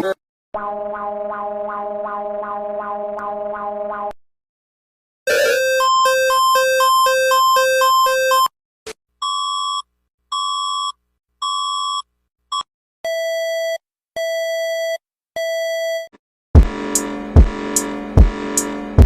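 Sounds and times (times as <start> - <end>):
alternating two-tone alarm: 5.3 - 8.5.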